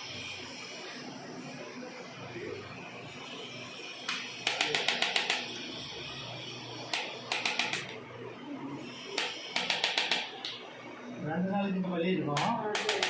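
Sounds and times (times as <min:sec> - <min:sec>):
rapid sharp clicks: 0:04.1 - 0:05.6, 0:06.9 - 0:08.0, 0:09.2 - 0:10.6, 0:12.4 - 0:13.0.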